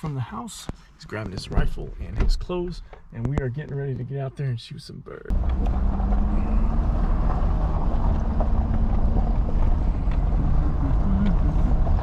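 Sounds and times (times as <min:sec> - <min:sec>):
road and wind rumble: 0:05.3 - 0:12.0
truck engine hum: 0:05.3 - 0:12.0.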